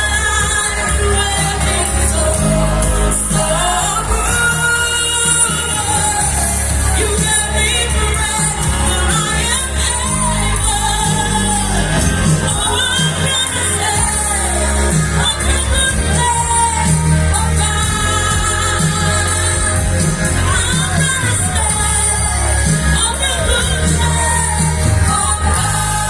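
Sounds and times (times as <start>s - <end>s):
person singing with band: 0.0s - 26.0s.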